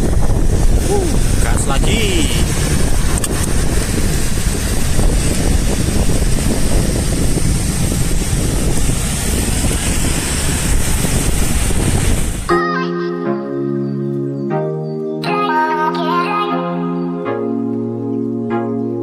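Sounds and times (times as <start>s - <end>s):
wind rushing over microphone: 0.0s - 12.5s.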